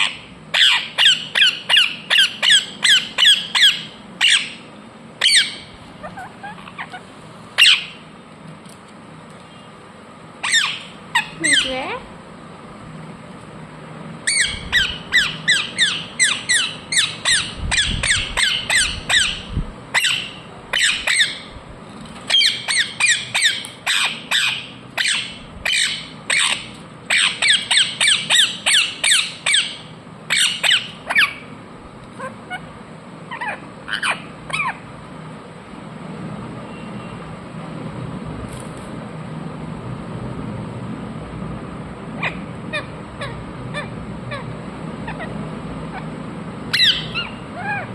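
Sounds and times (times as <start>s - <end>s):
parrot squawking: 0.0s - 8.0s, 10.4s - 12.0s, 14.2s - 21.5s, 22.3s - 31.5s, 32.1s - 32.7s, 33.3s - 34.9s, 42.2s - 47.9s.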